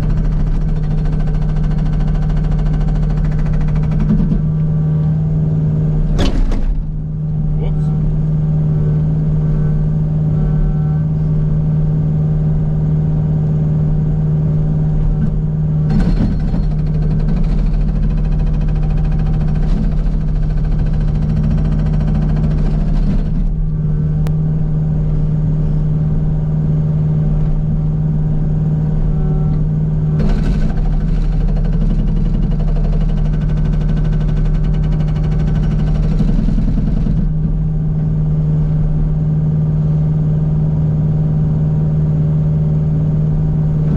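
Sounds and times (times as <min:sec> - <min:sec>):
hydraulic hammer pounding rock: 0:00.0 - 0:04.8, 0:06.0 - 0:07.1, 0:15.2 - 0:23.7, 0:30.1 - 0:37.7
excavator diesel engine running: 0:00.0 - 0:13.0, 0:13.7 - 0:41.8.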